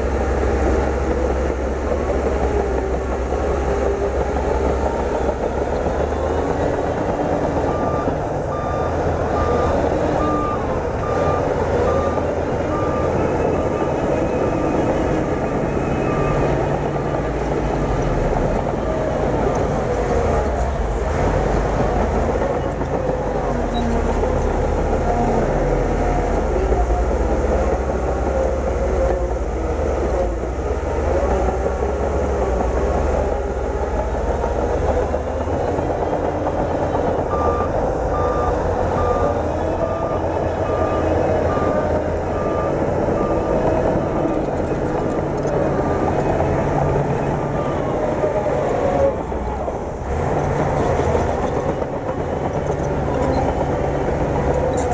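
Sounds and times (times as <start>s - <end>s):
bulldozer diesel engine rumbling: 0.0s - 54.9s
reverse alarm beeping: 7.7s - 17.3s.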